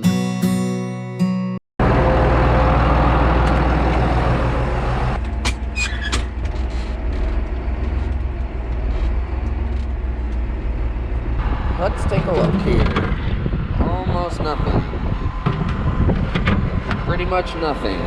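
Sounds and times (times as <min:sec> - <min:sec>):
tractor engine running: 0:01.8 - 0:18.0
short clicks and squeaks: 0:05.5 - 0:08.2.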